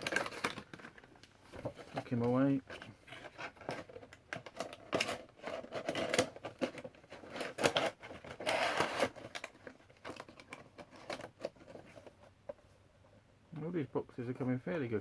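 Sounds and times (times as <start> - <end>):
packaging rustling: 0.0 - 12.6.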